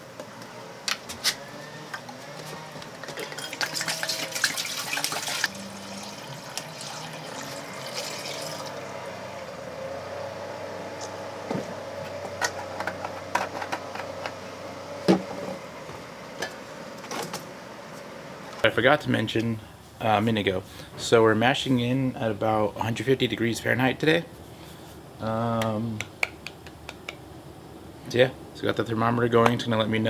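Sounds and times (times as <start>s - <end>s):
water pouring into a vessel: 3.0s - 9.1s.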